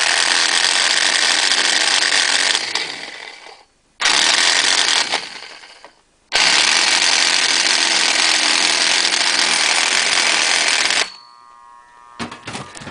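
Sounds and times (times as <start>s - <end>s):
motor running with harsh noise: 0.0s - 11.2s.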